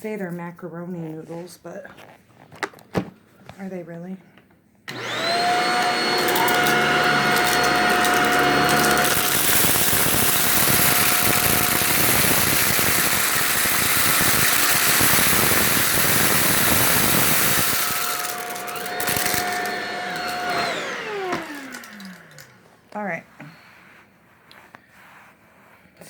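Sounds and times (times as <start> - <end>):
vacuum cleaner whine: 4.9 - 22.8.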